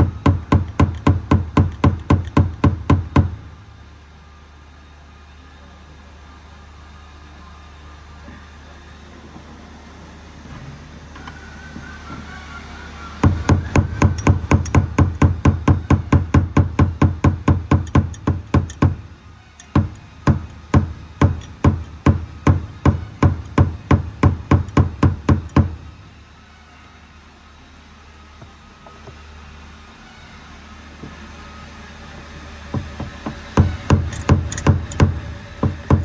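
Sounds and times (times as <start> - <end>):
rapid sharp knocks: 0.0 - 3.4, 13.2 - 19.1, 19.7 - 25.8, 32.7 - 36.0
steady low hum: 13.1 - 27.0, 32.1 - 36.0.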